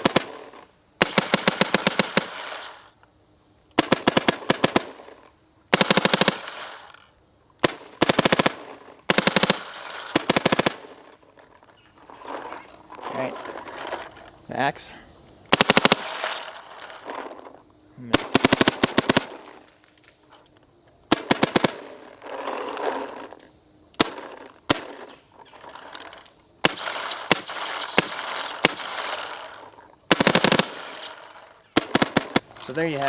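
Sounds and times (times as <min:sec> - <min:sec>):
paintball marker firing: 0:15.5 - 0:16.4, 0:26.6 - 0:29.3.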